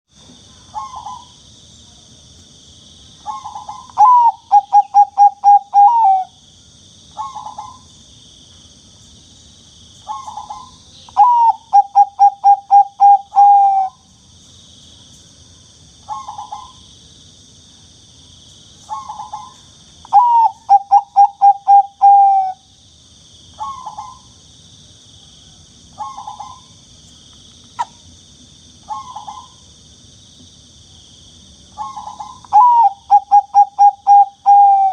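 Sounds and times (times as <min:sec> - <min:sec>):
dove cooing: 0:03.3 - 0:06.3, 0:10.1 - 0:14.0, 0:20.1 - 0:22.6, 0:31.8 - 0:34.9.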